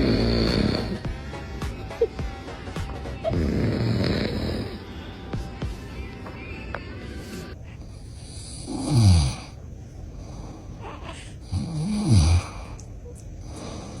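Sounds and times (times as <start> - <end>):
man snoring loudly: 0.0 - 1.6, 3.2 - 5.2, 8.2 - 9.6, 11.4 - 12.7.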